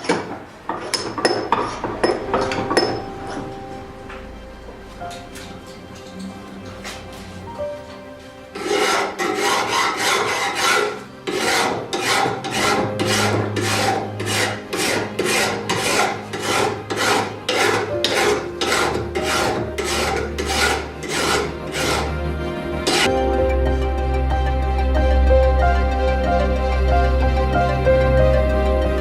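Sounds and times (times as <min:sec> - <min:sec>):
hand file strokes: 0:08.6 - 0:22.2, 0:22.9 - 0:23.1.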